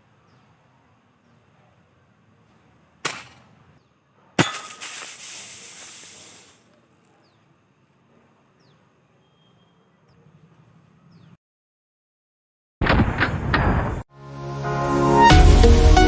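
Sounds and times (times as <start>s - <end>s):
airsoft rifle shots: 3.0s - 3.6s, 4.4s - 6.6s
soda bottle hissing spray: 4.4s - 6.7s.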